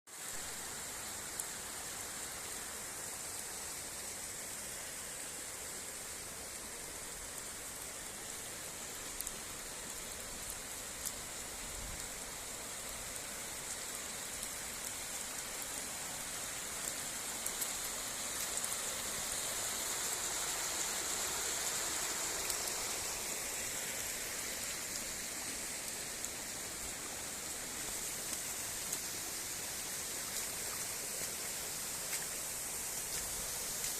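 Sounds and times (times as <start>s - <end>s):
waterfall rushing: 15.1s - 33.9s.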